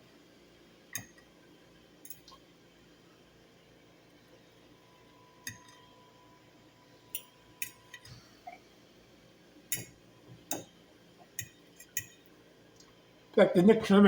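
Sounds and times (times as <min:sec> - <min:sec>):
cutlery clinking against a plate: 0:09.7 - 0:10.7, 0:11.4 - 0:12.2.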